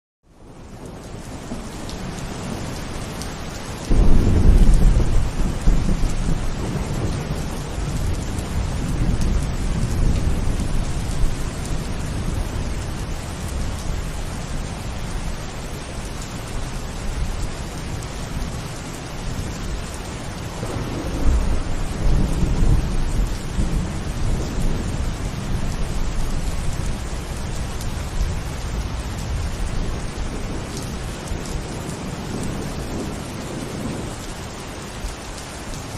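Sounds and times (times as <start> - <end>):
heavy rain: 0.2 - 35.9
thunder rolling: 3.9 - 12.9, 20.5 - 27.0.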